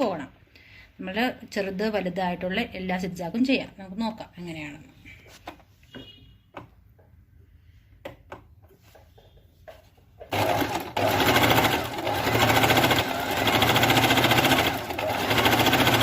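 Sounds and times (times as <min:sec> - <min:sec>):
electric sewing machine running: 0:10.3 - 0:16.0.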